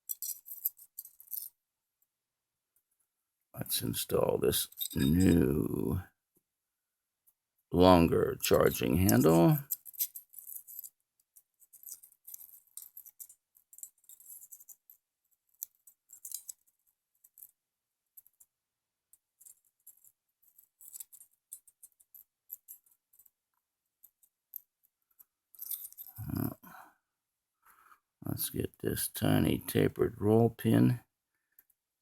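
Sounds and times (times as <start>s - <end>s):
metal parts clicking: 0.1s - 1.5s, 4.6s - 5.4s, 9.0s - 10.9s, 11.7s - 16.7s, 25.6s - 26.2s.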